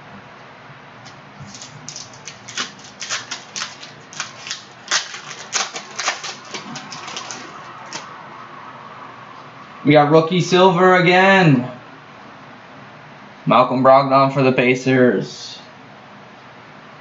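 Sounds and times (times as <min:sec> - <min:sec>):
card wrapper crackling: 0:01.4 - 0:08.1.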